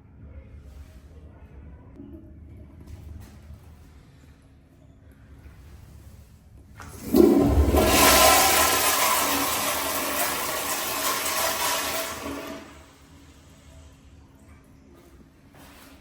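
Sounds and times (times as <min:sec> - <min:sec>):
toilet flush click: 0:06.8 - 0:12.8
toilet flushing water rush: 0:06.8 - 0:13.0.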